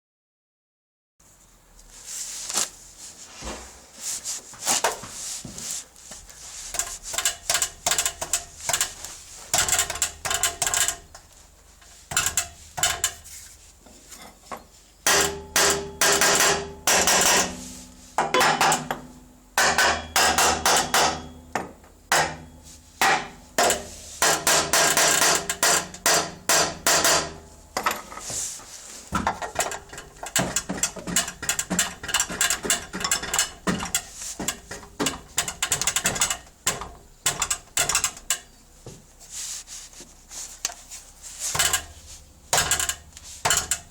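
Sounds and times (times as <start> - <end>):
exhaust metallic rattling: 6.2 - 13.7, 22.6 - 38.6, 40.5 - 43.9.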